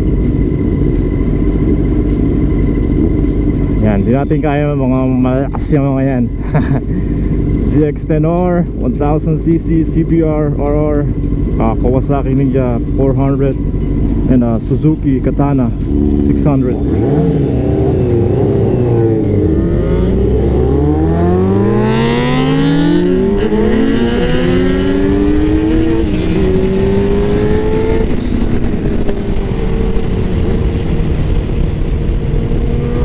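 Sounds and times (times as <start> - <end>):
sport-bike engines accelerating: 11.3 - 31.6
wind rush on microphone: 25.2 - 33.0.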